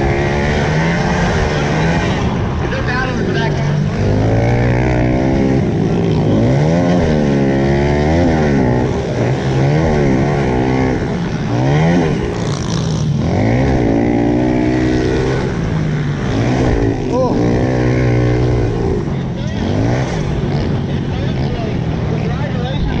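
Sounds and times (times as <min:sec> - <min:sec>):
pit bike engines revving: 0:00.0 - 0:23.0.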